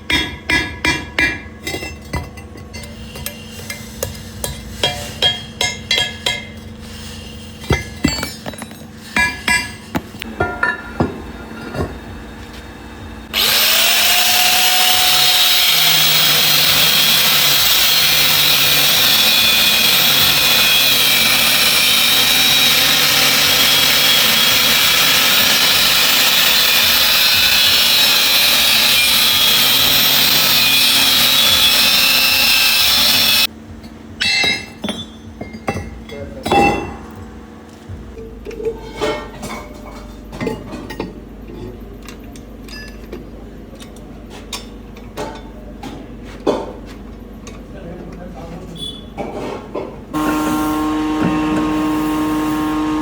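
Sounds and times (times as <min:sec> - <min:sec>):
power tool running: 0:13.2 - 0:33.5, 0:50.2 - 0:53.0.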